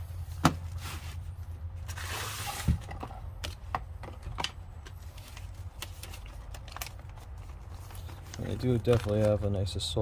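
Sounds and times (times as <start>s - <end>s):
packaging rustle: 4.9s - 9.6s.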